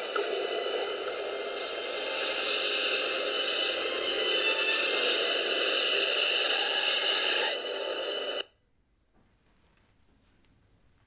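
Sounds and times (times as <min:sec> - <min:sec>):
lightsaber hissing hum: 0:00.0 - 0:08.4.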